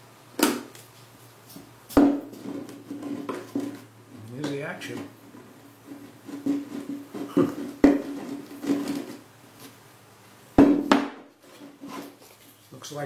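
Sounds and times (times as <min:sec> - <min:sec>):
sharp knock: 0:10.6 - 0:11.3.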